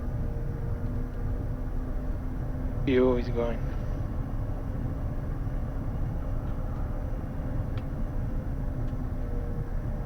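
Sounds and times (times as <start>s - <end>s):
low rumble of cockpit noise: 0.0s - 10.0s.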